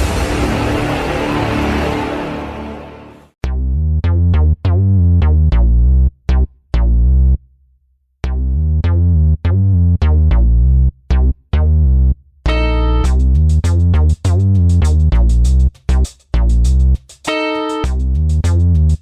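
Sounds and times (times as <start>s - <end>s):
electronic music with heavy bass: 8.3s - 19.0s.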